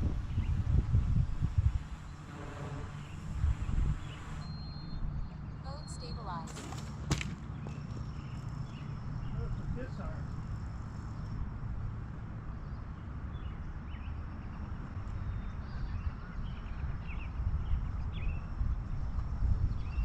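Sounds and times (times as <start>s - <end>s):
wind rumbling on microphone: 0.0s - 6.1s, 7.6s - 20.0s
bird chirps: 2.1s - 6.5s.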